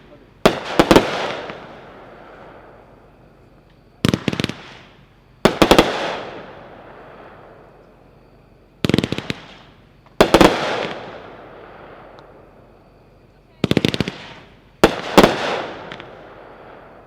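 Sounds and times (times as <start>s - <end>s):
firework bangs: 0.0s - 2.9s, 3.9s - 7.6s, 8.8s - 12.1s, 13.6s - 17.0s
firework hiss: 4.0s - 6.9s.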